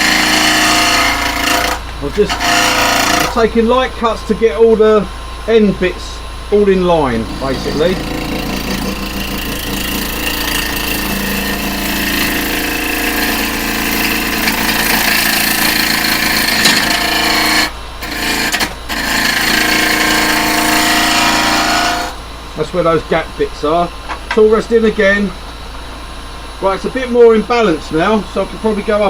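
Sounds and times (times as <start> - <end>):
chisel scraping spinning wood: 0.0 - 3.6, 6.9 - 22.2
lathe humming: 0.0 - 22.4.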